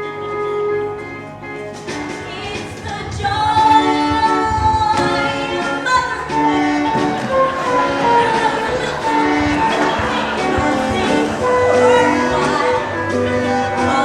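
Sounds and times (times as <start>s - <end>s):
instrumental backing: 0.0s - 14.0s
young cast singing show tune: 2.1s - 14.0s.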